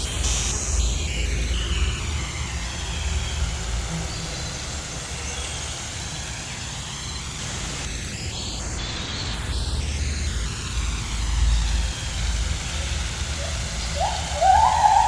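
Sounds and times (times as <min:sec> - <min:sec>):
steady rushing hiss: 0:00.0 - 0:15.0
faint bird calls: 0:13.4 - 0:15.0.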